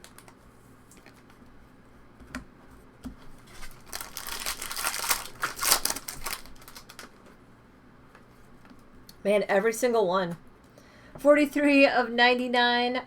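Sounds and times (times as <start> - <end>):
plastic wrapper crinkling and tearing: 3.4 - 7.2.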